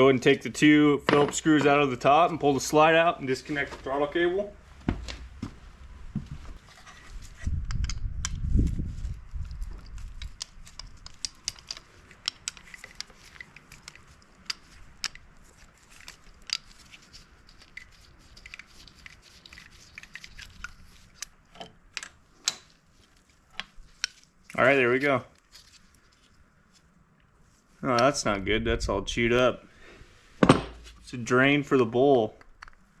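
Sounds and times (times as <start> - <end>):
screwdriver and metal parts clicking: 9.8 - 17.0.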